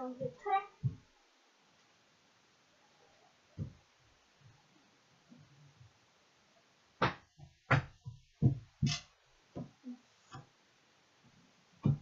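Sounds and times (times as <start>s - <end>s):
knocks and thumps: 3.6s - 3.8s, 7.0s - 10.5s, 11.8s - 12.0s.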